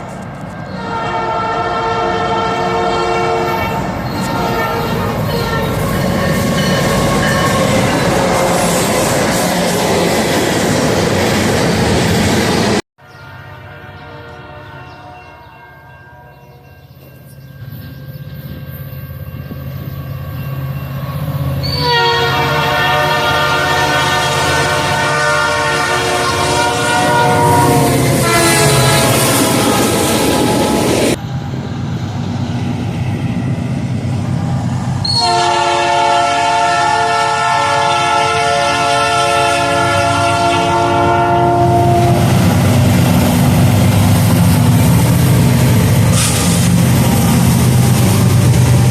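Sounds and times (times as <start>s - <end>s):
moving train rumble: 0.0s - 48.9s
train air horn blasts: 0.7s - 9.1s, 13.2s - 16.5s, 21.6s - 31.0s, 35.0s - 42.3s.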